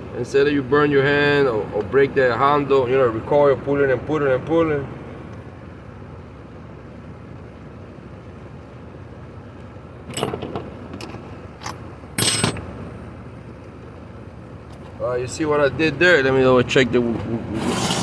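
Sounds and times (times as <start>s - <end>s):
metal tools clicking and clattering: 10.1s - 12.7s.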